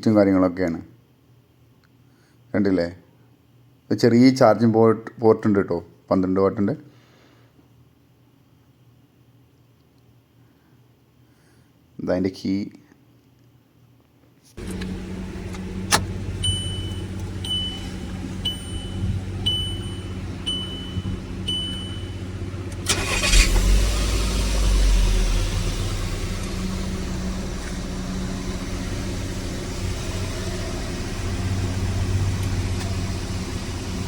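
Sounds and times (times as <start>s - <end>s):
dashboard warning chime beeping: 14.6s - 23.4s
car engine cranking and idling: 14.6s - 34.0s.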